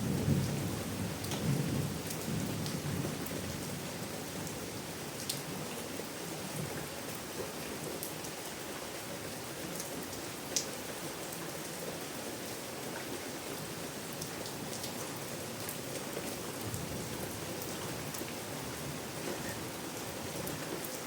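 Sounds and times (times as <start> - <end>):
steady rain falling: 0.0 - 21.0.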